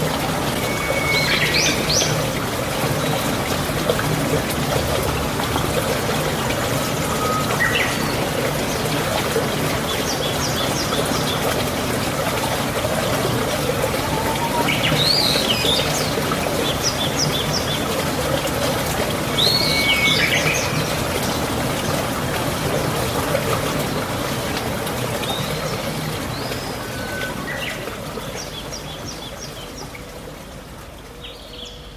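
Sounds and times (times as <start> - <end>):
running water rushing: 0.0 - 31.9
birds chirping and calling: 13.9 - 17.9.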